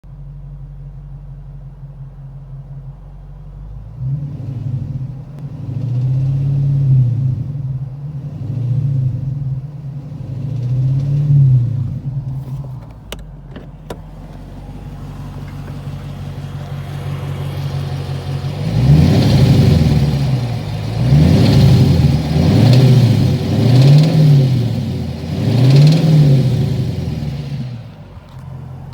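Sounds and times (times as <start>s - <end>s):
car engine revving from idle: 3.1s - 28.9s
engine knock: 12.3s - 28.9s.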